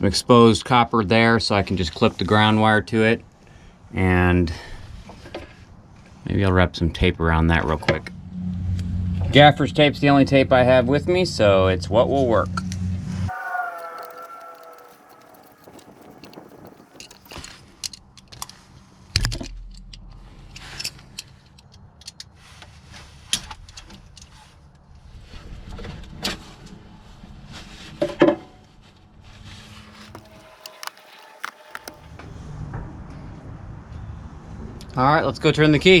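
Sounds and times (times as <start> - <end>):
low steady hum: 7.4 - 13.4.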